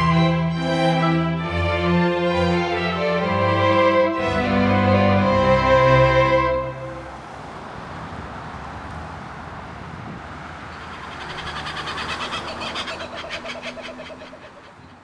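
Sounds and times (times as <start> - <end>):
outdoor background rush: 0.0 - 15.0
bird calling: 10.3 - 15.0.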